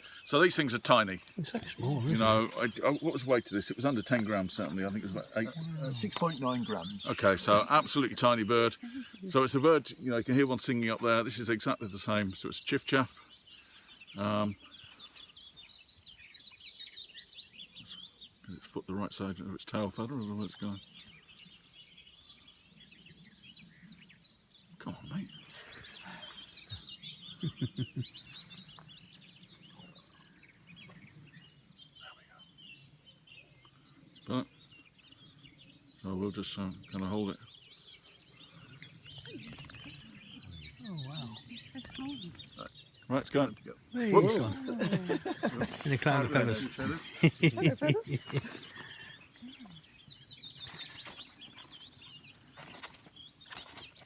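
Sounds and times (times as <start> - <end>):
birds chirping and trilling: 0.0 - 54.0
brief rustles: 50.6 - 54.0.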